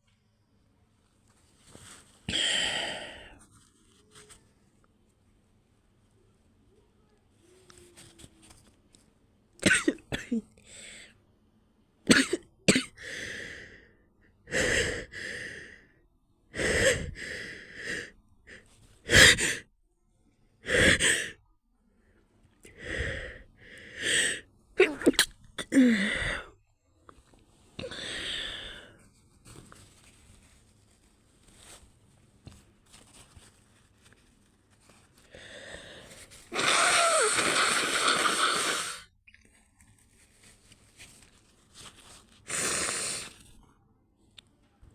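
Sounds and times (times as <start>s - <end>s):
person sneezing stifled: 9.6s - 10.4s, 19.1s - 19.6s, 24.8s - 26.4s, 36.5s - 39.1s
faint breathing: 13.0s - 19.6s, 22.1s - 24.5s, 35.2s - 36.4s.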